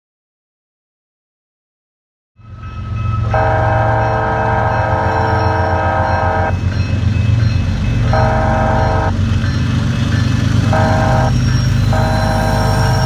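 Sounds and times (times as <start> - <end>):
train rumbling: 2.4 - 13.0
locomotive air horn blasts: 3.2 - 6.6, 8.0 - 9.2, 10.6 - 13.0.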